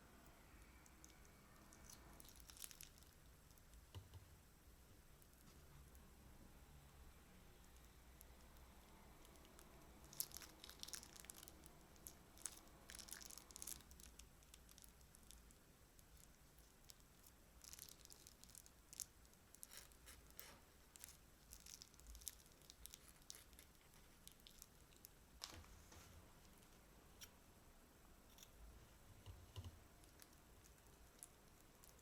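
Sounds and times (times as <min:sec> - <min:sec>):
slime and plastic bags crackling: 0:00.5 - 0:03.9, 0:07.7 - 0:25.8, 0:30.0 - 0:32.0.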